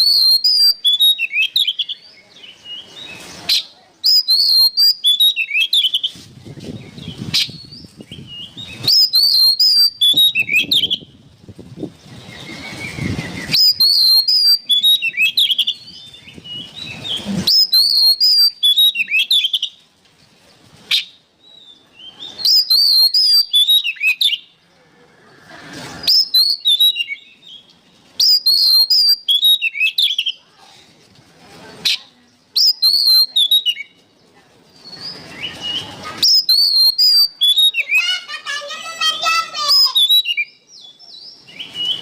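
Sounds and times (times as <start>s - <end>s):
songbird whistled phrases: 0.0s - 2.1s, 2.7s - 6.2s, 6.8s - 11.2s, 12.2s - 19.8s, 20.9s - 24.6s, 26.0s - 27.6s, 28.2s - 30.4s, 32.5s - 34.0s, 34.8s - 38.3s, 39.1s - 42.0s.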